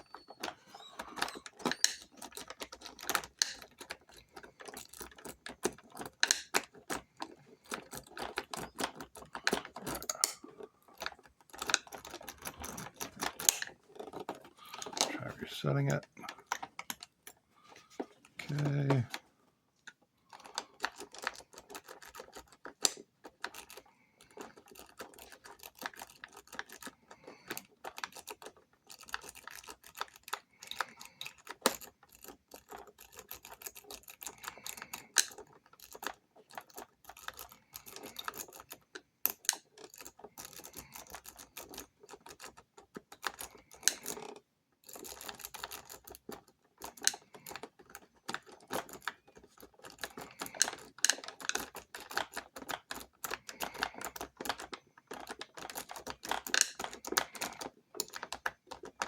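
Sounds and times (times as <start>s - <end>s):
lock pick raking metallic clicks: 0.2s - 15.1s.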